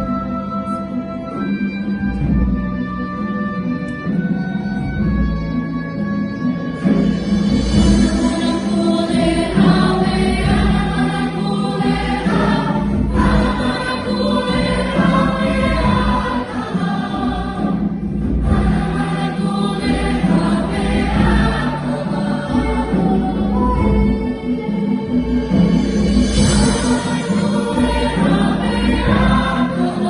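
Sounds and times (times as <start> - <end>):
orchestral accompaniment: 0.0 - 30.0
choir singing: 7.7 - 30.0.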